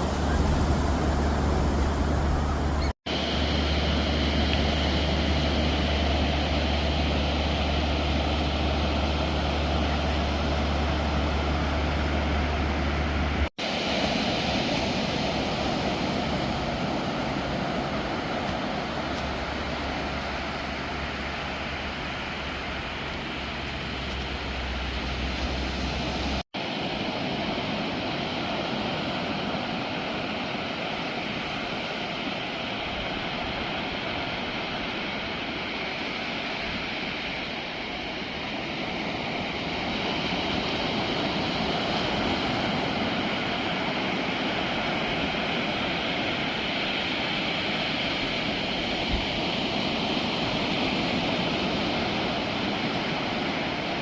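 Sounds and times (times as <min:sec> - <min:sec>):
heavy low rumble: 0:00.0 - 0:02.9
steady rushing noise: 0:00.0 - 0:30.8.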